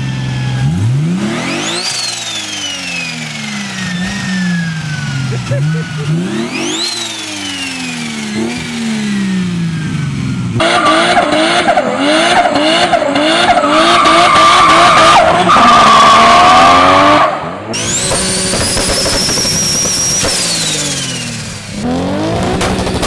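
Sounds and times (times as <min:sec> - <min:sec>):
car engine revving: 0:00.0 - 0:23.0.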